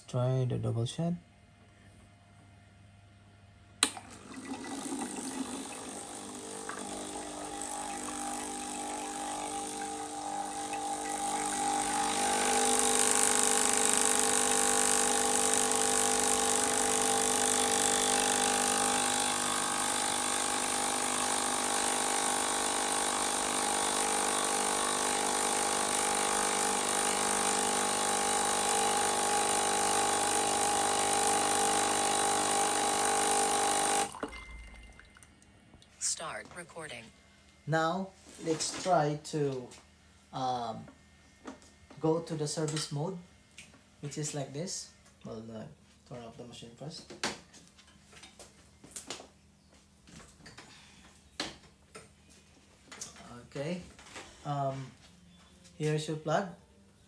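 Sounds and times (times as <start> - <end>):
espresso machine pump humming: 3.9 - 34.3.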